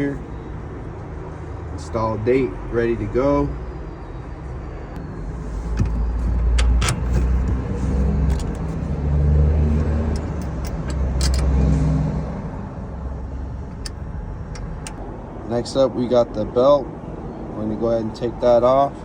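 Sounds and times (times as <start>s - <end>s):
sharp metallic clicks and knocks: 5.7s - 8.8s, 9.8s - 11.6s, 13.7s - 15.0s.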